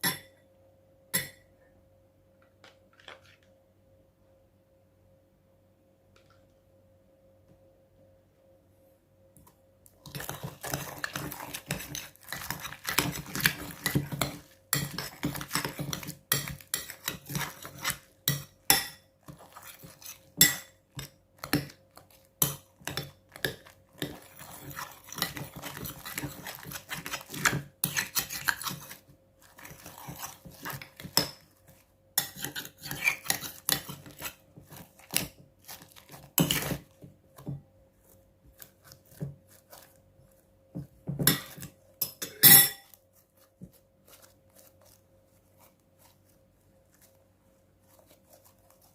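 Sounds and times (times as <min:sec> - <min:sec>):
utensil stirring slime in bowl: 0:09.4 - 0:48.9
utensil clinking and scraping bowl: 0:10.0 - 0:46.1.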